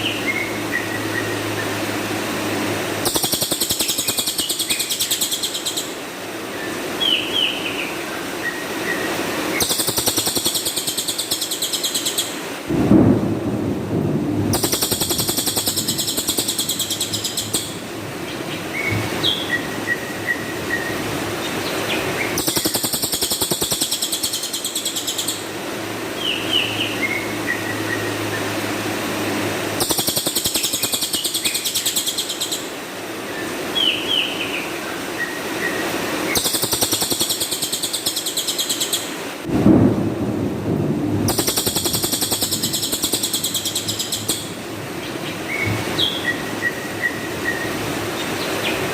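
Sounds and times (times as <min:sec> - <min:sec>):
bird rattling trill: 0:03.0 - 0:05.8, 0:09.6 - 0:12.3, 0:14.6 - 0:17.8, 0:22.4 - 0:25.4, 0:29.8 - 0:32.6, 0:36.3 - 0:39.0, 0:41.3 - 0:44.6
bird whistled chirps: 0:09.6 - 0:12.3, 0:14.6 - 0:17.8, 0:22.3 - 0:25.4, 0:41.3 - 0:44.5.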